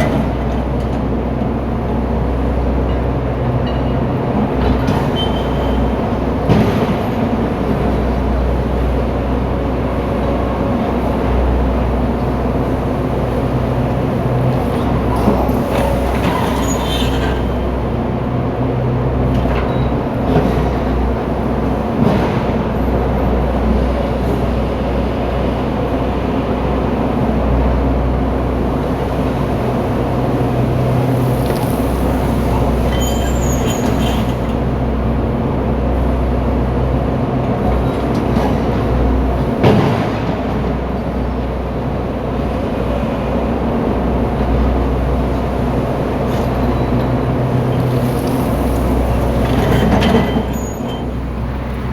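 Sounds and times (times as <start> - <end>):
diesel engine running: 25.6 - 39.6, 41.2 - 51.9.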